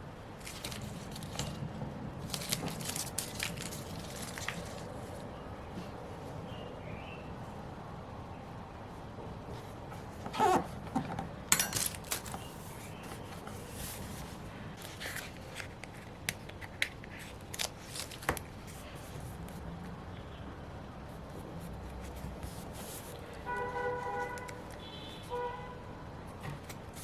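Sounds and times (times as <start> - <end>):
paper and stickers rustling: 0.4 - 5.9, 10.4 - 19.6, 21.4 - 25.1.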